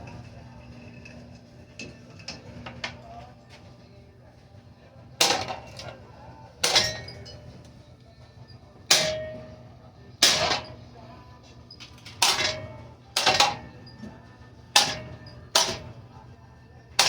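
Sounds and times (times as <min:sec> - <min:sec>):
metal pole clanging on fan: 0:05.2 - 0:07.7, 0:08.9 - 0:11.0, 0:11.8 - 0:16.2.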